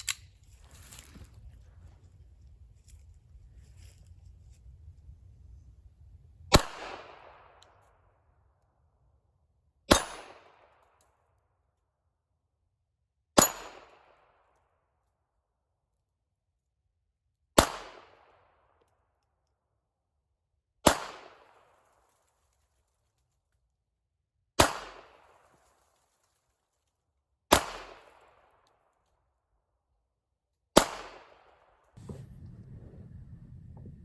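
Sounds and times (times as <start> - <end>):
pistol shots with echo: 6.5 - 7.5, 9.9 - 10.6, 27.5 - 28.2, 30.8 - 31.5.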